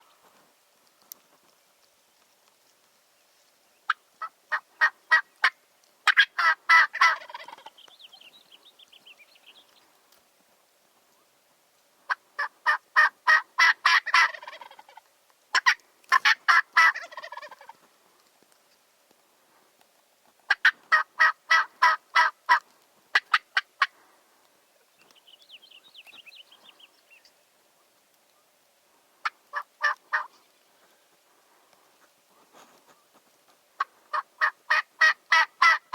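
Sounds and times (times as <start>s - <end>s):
fast quavering turkey notes: 3.9s - 7.8s, 12.1s - 17.8s, 29.2s - 30.9s, 33.8s - 35.9s
turkey yelps: 3.9s - 7.8s, 12.1s - 17.8s, 20.5s - 23.9s, 29.2s - 30.4s, 34.1s - 35.9s.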